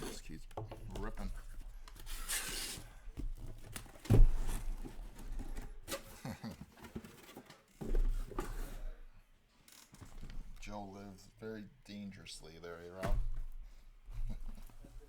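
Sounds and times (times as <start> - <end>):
rustling and knocks: 0.0 - 9.0.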